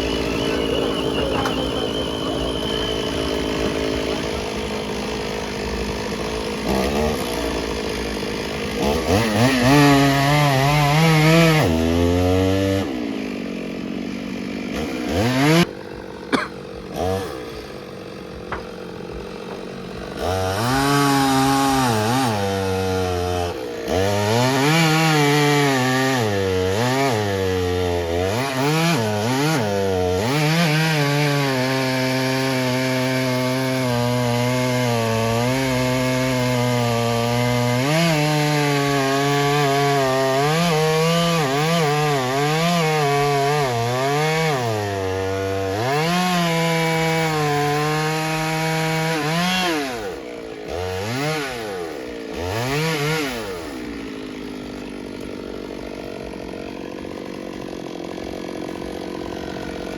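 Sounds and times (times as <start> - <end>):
chainsaw cutting wood: 0.0 - 59.9
sharp knocks: 18.4 - 19.7.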